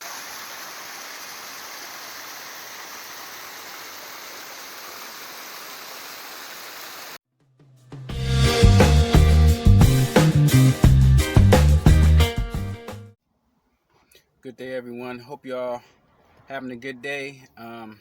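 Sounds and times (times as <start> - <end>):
creek water flowing: 0.0 - 7.2
music with beat and bass: 7.9 - 13.2.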